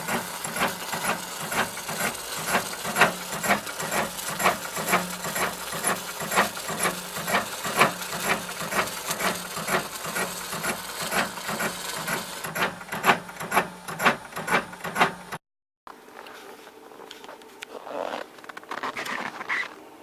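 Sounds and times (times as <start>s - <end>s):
machine clacking over hum: 0.0s - 15.4s.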